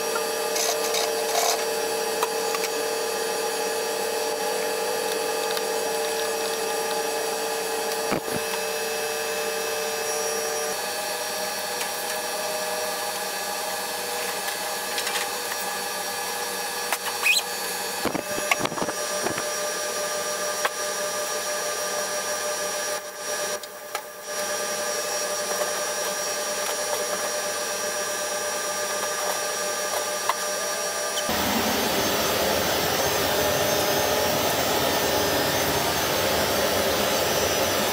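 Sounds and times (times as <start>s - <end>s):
machinery droning: 31.0s - 37.9s.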